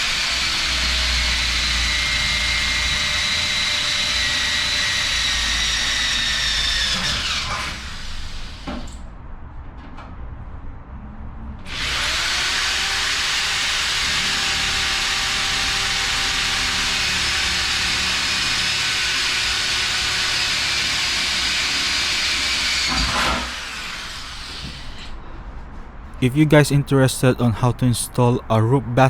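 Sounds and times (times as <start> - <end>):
power drill drilling into metal: 0.0 - 9.0, 11.7 - 25.1.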